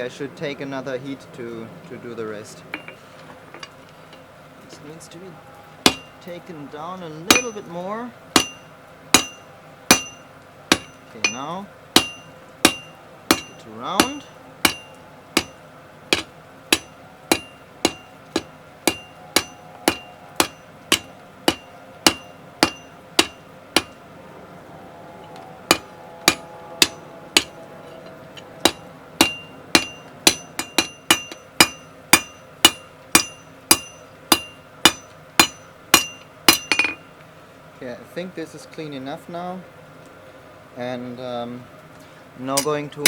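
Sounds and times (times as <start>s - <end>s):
hammer blows on steel over anvil: 5.8s - 6.3s, 7.2s - 7.8s, 8.4s - 24.0s, 25.2s - 37.1s.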